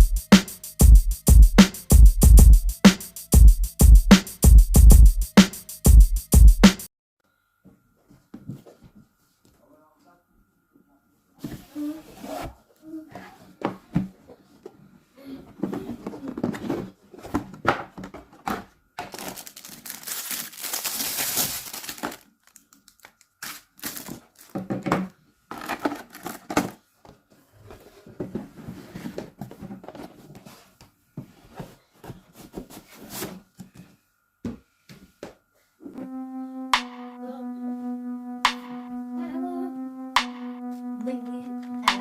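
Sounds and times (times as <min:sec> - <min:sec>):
background music with held tone: 0:00.0 - 0:06.9, 0:36.0 - 0:42.0
packaging crinkling and tearing: 0:19.0 - 0:24.6.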